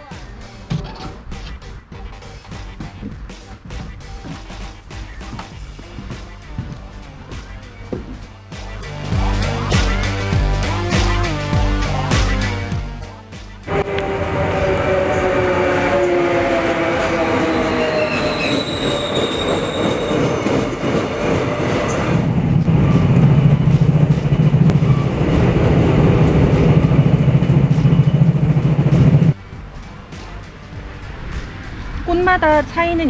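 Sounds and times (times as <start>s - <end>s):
low rumble of train cars: 13.7s - 33.0s.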